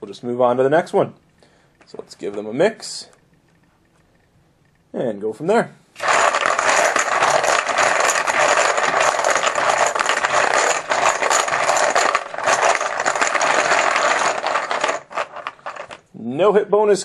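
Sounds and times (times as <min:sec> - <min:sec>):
poker chips rattling in container: 0:06.0 - 0:16.0.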